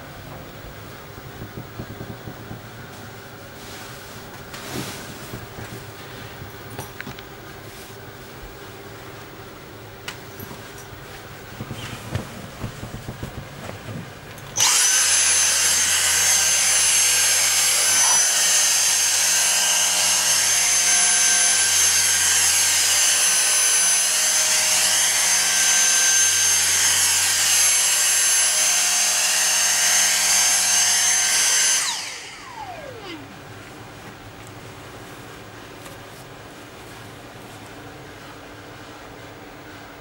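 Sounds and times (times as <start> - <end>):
vacuum cleaner whine: 0.0 - 9.5, 10.1 - 40.0.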